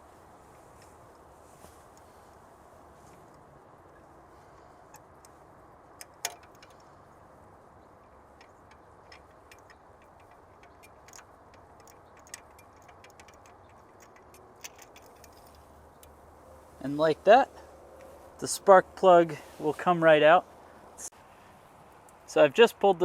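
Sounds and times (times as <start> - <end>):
socket wrench metal clicks: 8.0 - 16.1.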